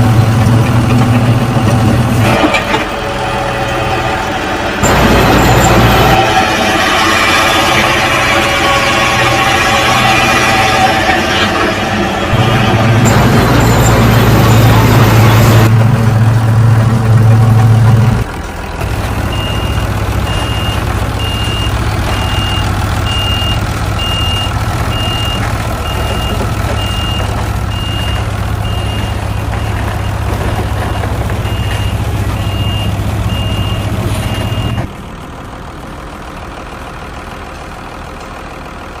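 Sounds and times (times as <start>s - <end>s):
heavy machine engine running: 0.0s - 39.0s
reversing alarm beeping: 19.2s - 34.9s.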